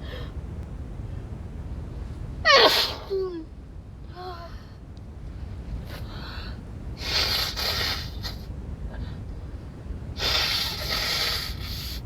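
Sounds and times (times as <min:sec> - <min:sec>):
woman snorting through congested nose: 0:07.0 - 0:08.4, 0:10.2 - 0:12.0.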